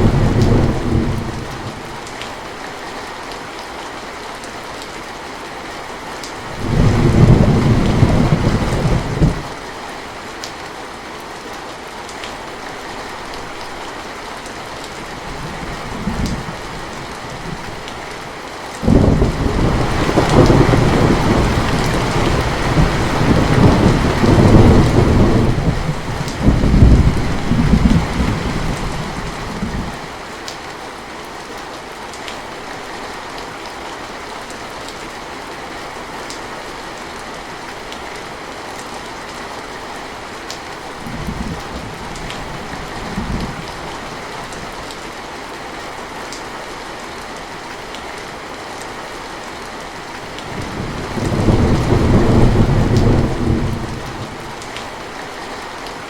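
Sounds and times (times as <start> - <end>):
thunder rumbling: 0.0 - 1.8, 6.5 - 9.6, 18.8 - 30.0, 50.5 - 54.6
rain hiss: 0.0 - 56.0.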